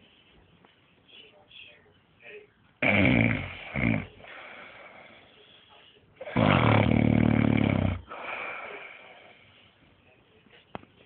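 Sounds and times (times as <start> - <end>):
man snoring loudly: 2.8 - 4.1, 6.3 - 8.1.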